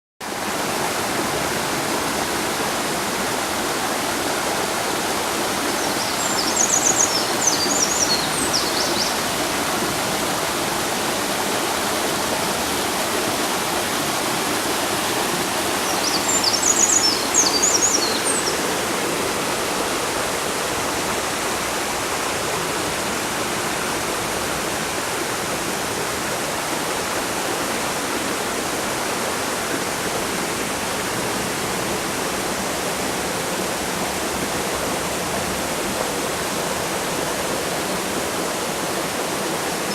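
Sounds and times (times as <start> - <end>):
river water rushing: 0.2 - 39.9
songbird singing: 5.6 - 9.2, 15.6 - 18.8.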